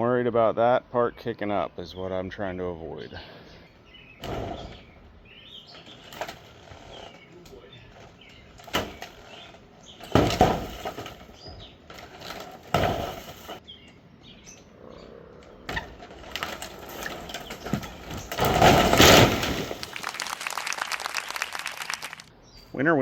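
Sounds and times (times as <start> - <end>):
timber knocking and cracking: 4.2 - 5.0, 5.6 - 13.6, 15.7 - 20.4
wooden structure crashing down: 4.2 - 5.0, 5.6 - 13.6, 15.7 - 22.2
wood debris clattering: 4.2 - 13.6, 15.7 - 22.2.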